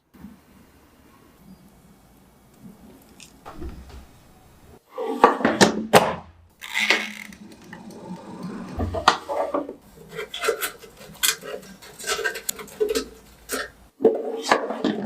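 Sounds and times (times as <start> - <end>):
cookware scraping clatter: 6.8 - 15.0.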